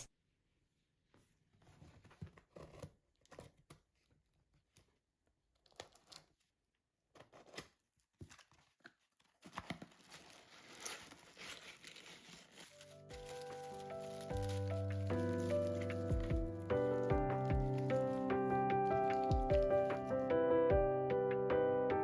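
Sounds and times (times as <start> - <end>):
packaging rustling and tearing: 7.2 - 20.2.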